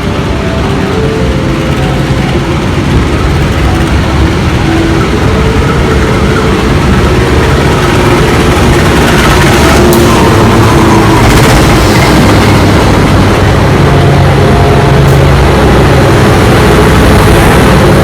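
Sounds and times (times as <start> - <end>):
diesel locomotive engine rumbling: 0.0 - 18.0.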